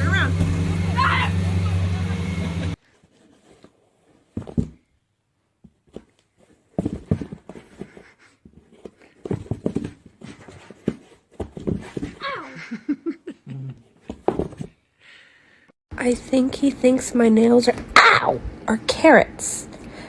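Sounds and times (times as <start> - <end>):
knocks and scuffles: 3.0 - 4.9, 5.6 - 12.2, 14.0 - 14.8.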